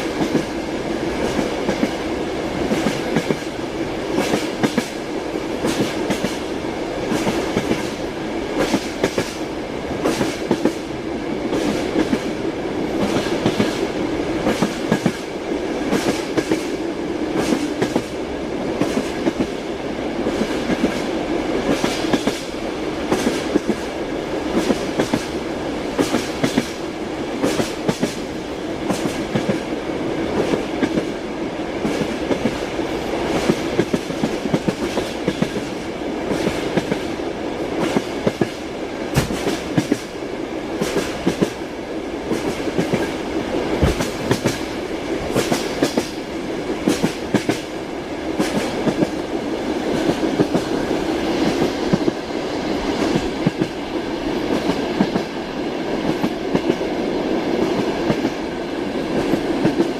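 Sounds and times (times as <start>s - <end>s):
train wheels clacking on rail joints: 0.0s - 0.6s, 2.6s - 5.0s, 5.6s - 6.5s, 7.1s - 10.9s, 12.9s - 18.2s, 18.8s - 19.6s, 20.2s - 23.9s, 24.5s - 25.4s, 26.0s - 26.8s, 27.4s - 29.7s, 33.3s - 41.7s, 42.3s - 47.8s, 48.4s - 52.2s, 52.8s - 53.8s, 54.4s - 58.4s, 59.0s - 59.9s
train rumbling: 0.0s - 59.9s.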